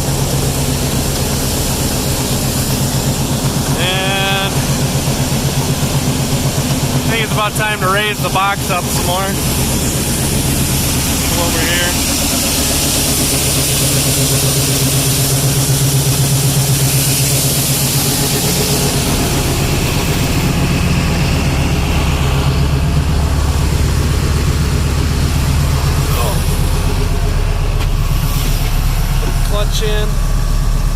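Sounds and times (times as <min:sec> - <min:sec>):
truck engine idling: 0:00.0 - 0:30.9.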